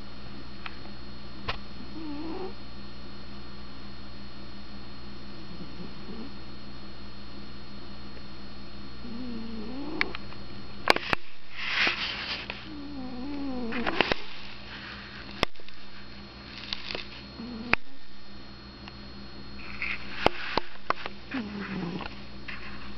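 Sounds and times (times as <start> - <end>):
cat snoring: 1.8 - 2.6, 5.4 - 6.4, 9.0 - 10.2, 12.6 - 14.1, 17.4 - 17.8, 21.3 - 22.1.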